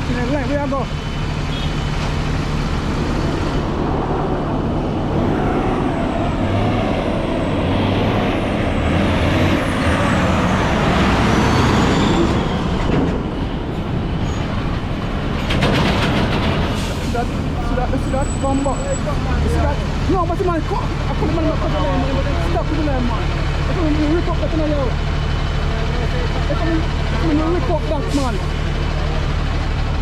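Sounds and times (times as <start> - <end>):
diesel truck engines rumbling: 0.0 - 30.0
road noise: 0.0 - 30.0
brake squeal: 0.1 - 6.8, 9.6 - 15.6, 16.6 - 19.9.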